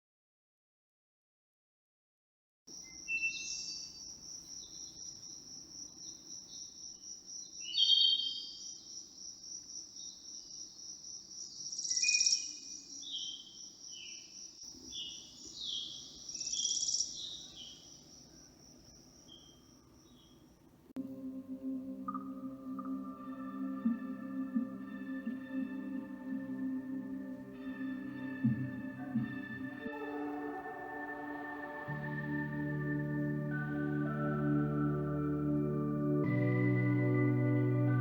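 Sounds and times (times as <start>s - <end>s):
bird chirps: 2.7s - 9.1s, 9.8s - 20.6s
insects trilling: 2.7s - 20.8s.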